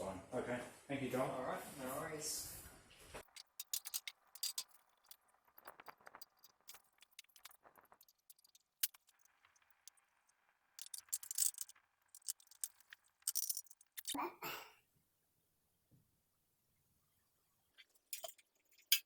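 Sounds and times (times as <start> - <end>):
small metal parts clinking: 3.2 - 14.2, 17.8 - 19.0.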